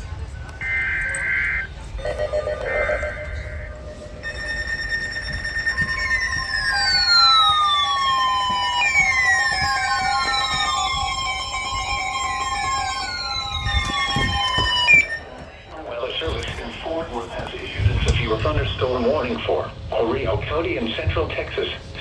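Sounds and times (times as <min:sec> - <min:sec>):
falling siren-like sweeps: 0:00.5 - 0:16.5
electronic alert tone: 0:00.6 - 0:15.4.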